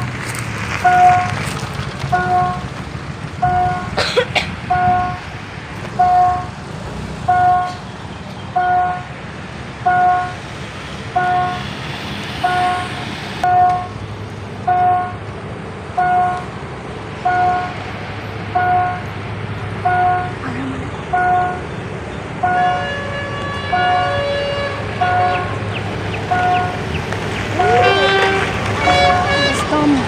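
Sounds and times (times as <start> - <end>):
steady low rumble: 0.0 - 6.8
held horn-like tone: 12.4 - 13.9, 22.4 - 25.6, 27.5 - 30.0.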